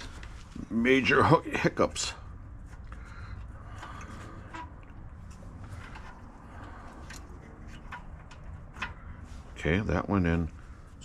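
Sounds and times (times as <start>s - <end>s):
steady low hum: 0.0s - 11.0s
metal parts clicking and scraping: 2.6s - 9.8s.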